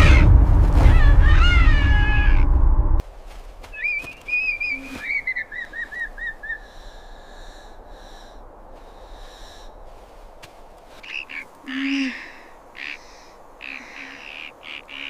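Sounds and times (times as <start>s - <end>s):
loud low rumble: 0.0s - 3.0s
bird-like whistling calls: 3.7s - 6.7s.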